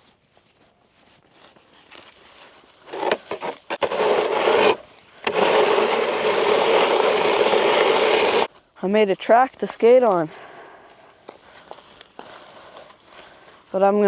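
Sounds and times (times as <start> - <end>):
scraping on ice: 1.3 - 8.5.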